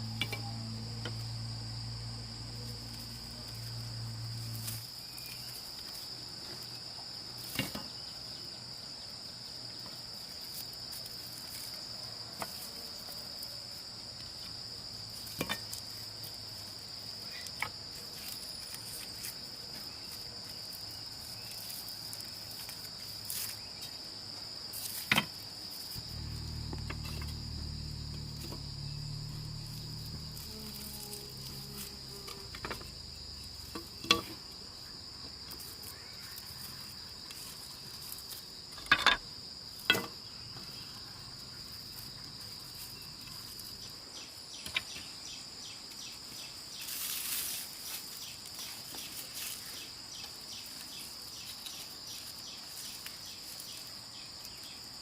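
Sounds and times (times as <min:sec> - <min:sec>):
crickets trilling: 0:00.0 - 0:55.0
low hum: 0:26.0 - 0:34.0.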